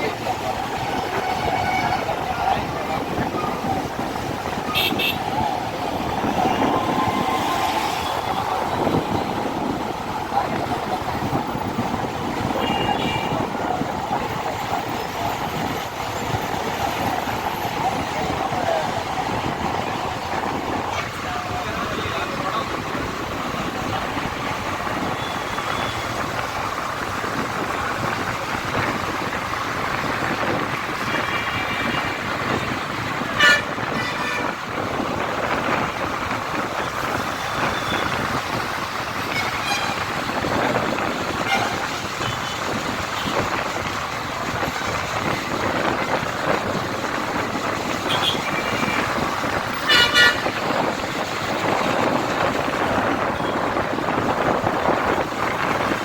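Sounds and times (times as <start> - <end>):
city road traffic: 0.0 - 56.0
vehicle horns honking: 0.8 - 2.4, 4.6 - 5.4, 12.6 - 13.4, 33.2 - 34.7, 39.2 - 40.2, 41.4 - 43.4, 48.0 - 50.8.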